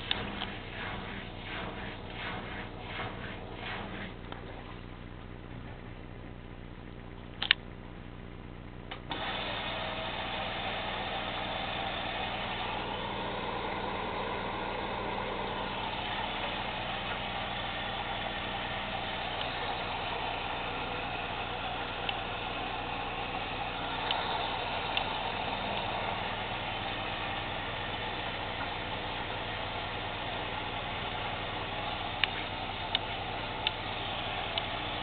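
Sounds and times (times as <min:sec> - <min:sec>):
water rushing into machine: 0:09.1 - 0:35.0.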